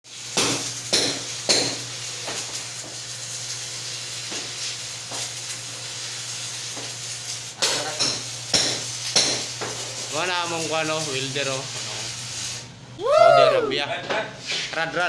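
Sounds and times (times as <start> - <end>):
welding arc crackling and hissing: 0.0 - 13.0, 14.4 - 15.0.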